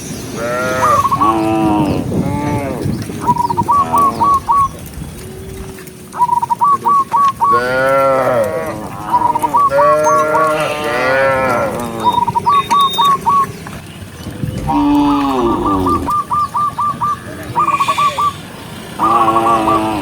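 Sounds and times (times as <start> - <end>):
cow mooing: 7.5 - 12.7, 14.4 - 16.2.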